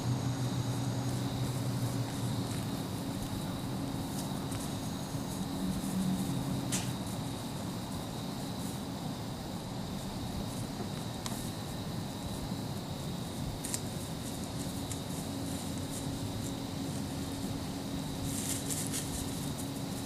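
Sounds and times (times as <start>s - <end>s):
crickets chirring: 0.0s - 20.0s.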